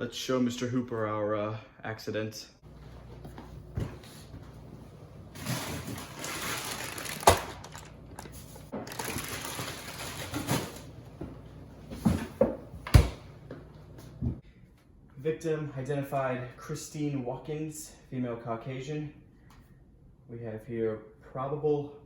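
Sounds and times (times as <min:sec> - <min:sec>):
rustling crinkling handling noise: 0:05.3 - 0:11.0.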